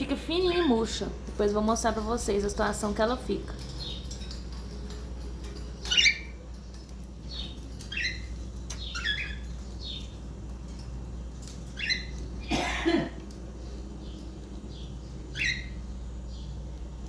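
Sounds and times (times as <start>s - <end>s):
birds pecking a pine cone: 0.4s - 17.0s
cockatiels squawking: 5.8s - 6.3s, 7.4s - 10.1s, 11.7s - 12.3s, 15.3s - 15.8s.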